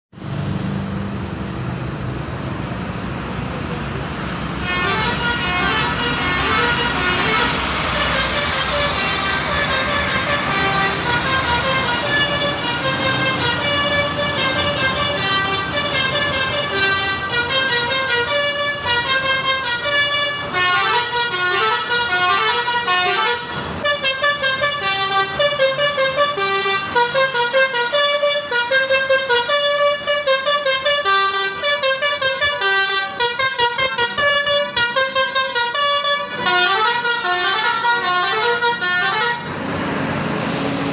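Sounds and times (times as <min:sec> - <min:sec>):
musical bus horn tune: 0:04.6 - 0:39.6.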